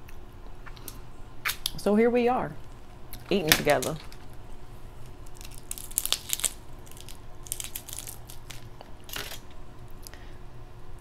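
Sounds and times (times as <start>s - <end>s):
crab shells cracking: 5.0s - 10.2s.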